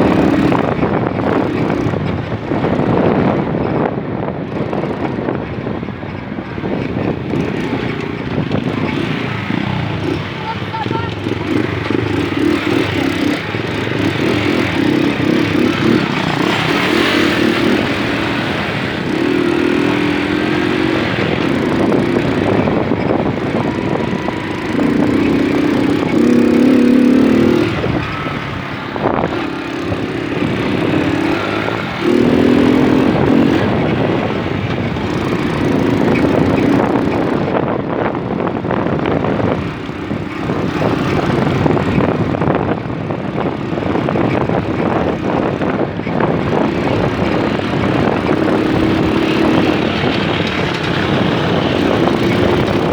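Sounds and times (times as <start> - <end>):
moped engine running: 0.0 - 52.9
wind and road noise: 0.0 - 52.9.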